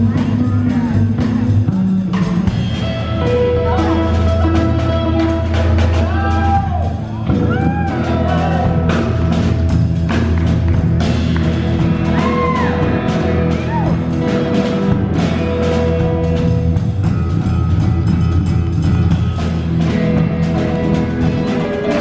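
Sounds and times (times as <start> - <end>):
steady bass: 0.0 - 22.0.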